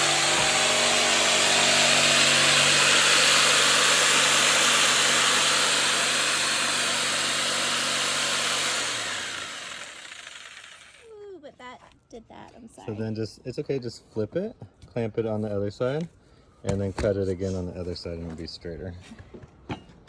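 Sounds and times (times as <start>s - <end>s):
power saw cutting wood: 0.0s - 11.1s.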